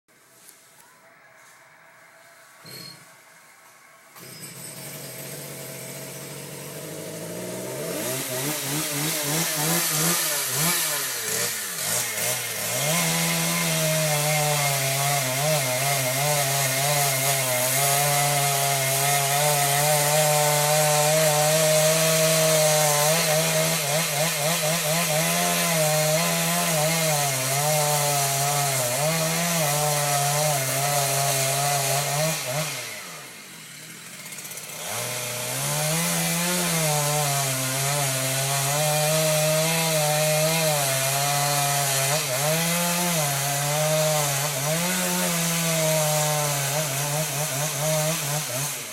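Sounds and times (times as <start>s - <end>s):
chainsaw cutting wood: 4.1s - 48.9s.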